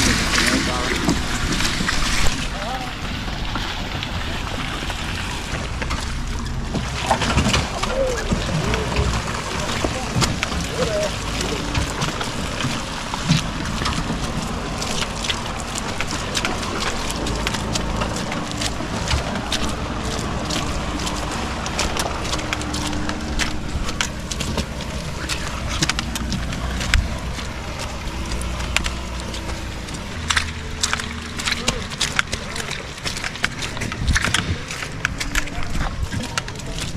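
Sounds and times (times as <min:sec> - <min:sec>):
vehicle engine on rough road: 0:00.0 - 0:36.9
wind noise on microphone: 0:32.9 - 0:36.9.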